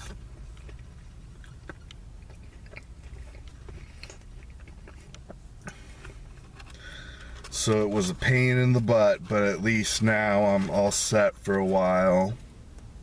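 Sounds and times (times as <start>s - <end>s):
wet mouth clicks: 0.0s - 5.8s
person chewing food: 0.0s - 7.5s
low steady hum: 0.0s - 13.0s.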